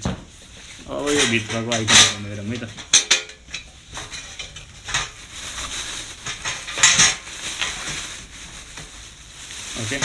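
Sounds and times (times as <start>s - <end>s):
metal grill parts clattering: 0.0s - 8.0s.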